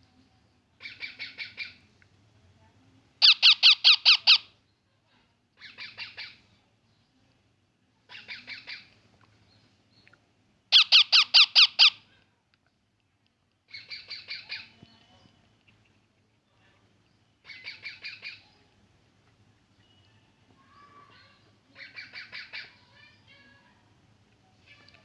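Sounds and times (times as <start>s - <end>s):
baby parrot rasping chirps: 3.2s - 4.5s, 10.7s - 12.0s.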